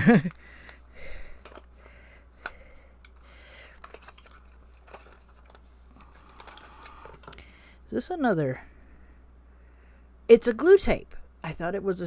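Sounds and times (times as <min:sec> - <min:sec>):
packaging crinkling: 0:03.1 - 0:07.0.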